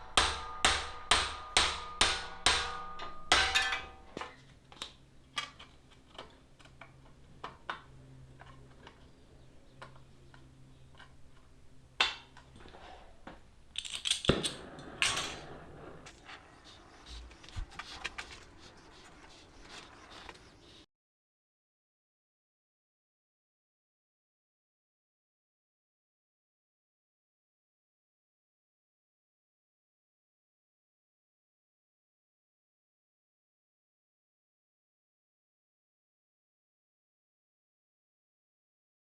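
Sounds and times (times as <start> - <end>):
hammer blows on metal: 0.0 - 4.0
metal being handled clatter: 13.7 - 16.4.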